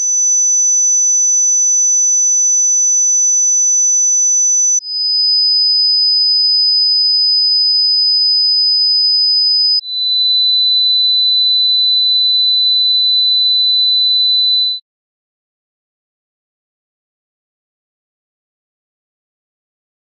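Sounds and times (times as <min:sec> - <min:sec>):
high-pitched pure tone: 0:14.3 - 0:14.8.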